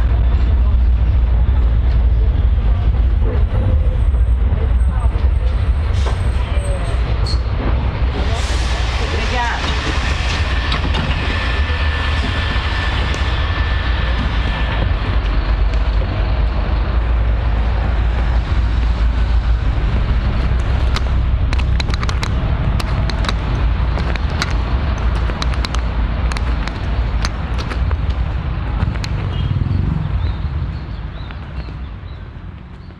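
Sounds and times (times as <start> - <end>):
vehicle rumble in motion: 0.0 - 32.9
sharp clicks and rattles: 19.7 - 29.6.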